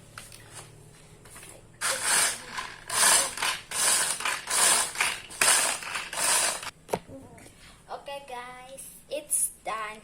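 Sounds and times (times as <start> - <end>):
food chopper whirring: 1.8 - 6.7.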